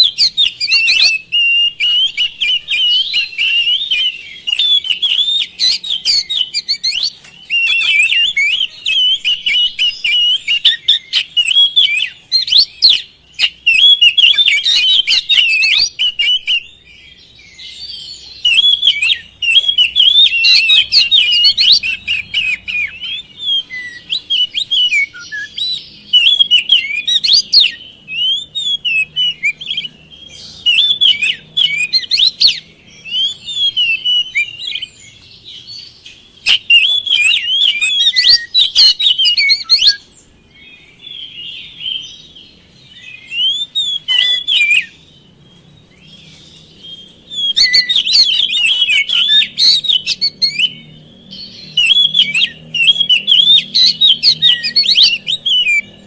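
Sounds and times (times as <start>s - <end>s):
bird singing whistles and chatter: 0.0s - 56.0s.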